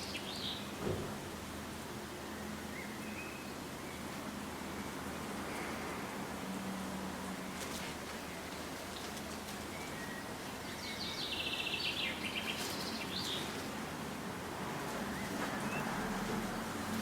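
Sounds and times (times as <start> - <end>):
songbird chirping and trilling: 0.0 - 0.7, 9.7 - 13.7
background hiss: 0.0 - 17.0.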